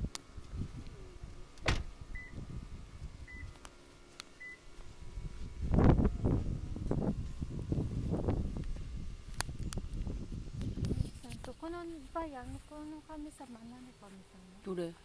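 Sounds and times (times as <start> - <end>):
wind noise on microphone: 0.0 - 3.6, 4.7 - 12.8.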